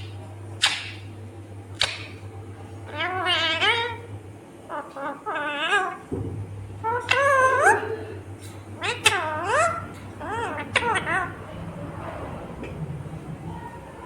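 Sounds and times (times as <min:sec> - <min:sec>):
steady low hum: 0:00.0 - 0:14.0
parakeet squawking and calling: 0:02.8 - 0:06.2, 0:06.8 - 0:12.0.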